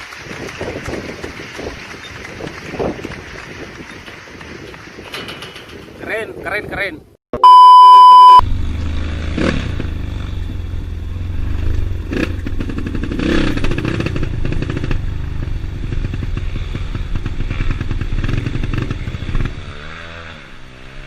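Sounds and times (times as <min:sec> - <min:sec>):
knocks and rattles: 0:00.0 - 0:06.1
motorcycle engine running: 0:08.4 - 0:21.0.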